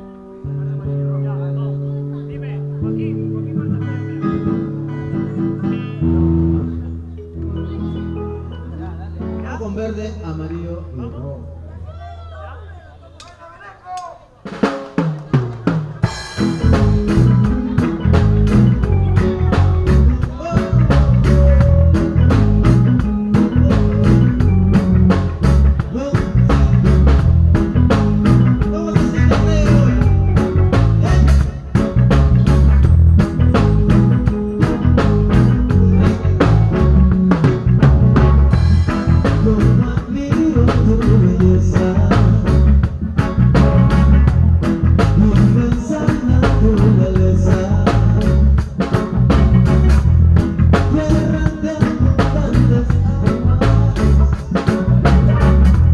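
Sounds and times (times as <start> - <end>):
upbeat music with heavy bass: 15.6 - 55.9.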